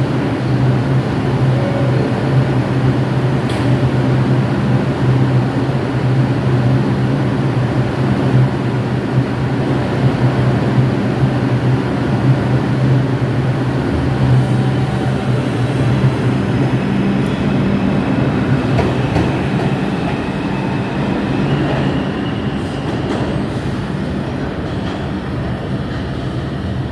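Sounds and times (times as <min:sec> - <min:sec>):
subway train rumble: 0:00.0 - 0:26.9.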